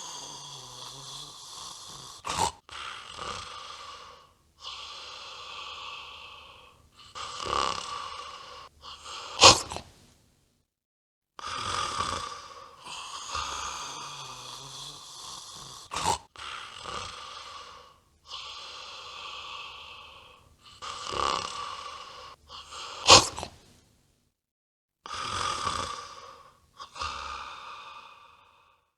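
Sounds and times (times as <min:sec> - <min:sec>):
dog snorting: 0:00.0 - 0:03.7, 0:07.0 - 0:08.2, 0:08.8 - 0:09.9, 0:12.9 - 0:17.1, 0:20.7 - 0:21.8, 0:22.5 - 0:23.6
dog snoring: 0:00.0 - 0:10.0, 0:11.4 - 0:23.6, 0:25.1 - 0:28.3.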